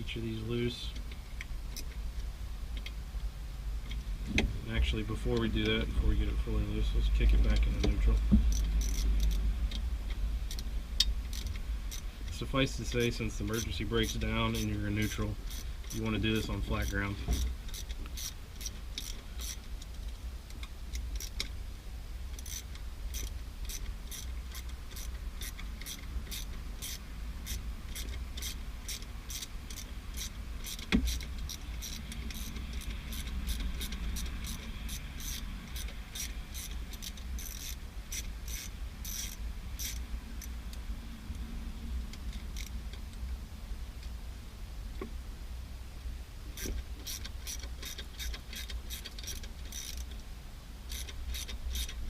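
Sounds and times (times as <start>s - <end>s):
low steady hum: 0.0s - 52.0s
hand ratchet clicking: 7.2s - 21.6s, 22.3s - 40.6s, 42.1s - 43.0s, 46.6s - 50.2s, 50.8s - 52.0s.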